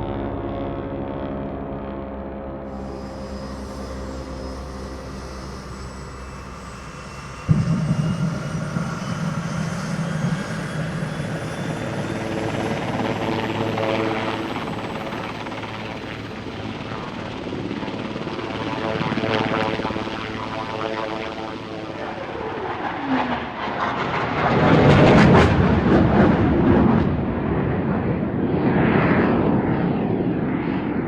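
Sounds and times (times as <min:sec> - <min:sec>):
seaplane engine starting: 0:00.0 - 0:18.0
helicopter approaching: 0:00.0 - 0:31.0
propeller aircraft engine droning: 0:00.0 - 0:31.0.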